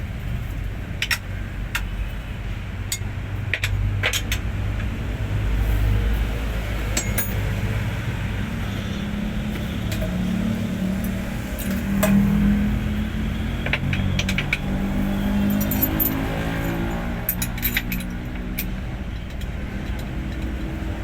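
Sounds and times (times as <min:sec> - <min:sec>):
metallic tool clinks: 0:07.0 - 0:07.5, 0:15.4 - 0:18.1.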